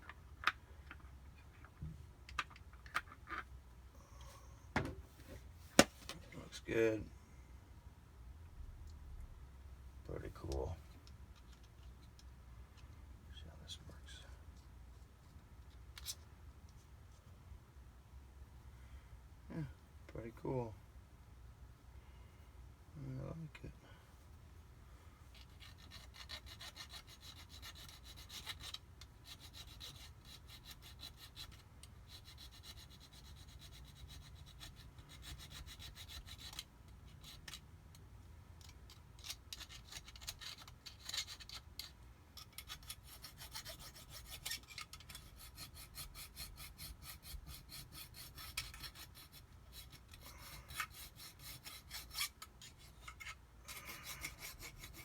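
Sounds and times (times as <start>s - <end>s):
hand file rasping on metal: 25.4s - 37.6s, 39.3s - 55.0s.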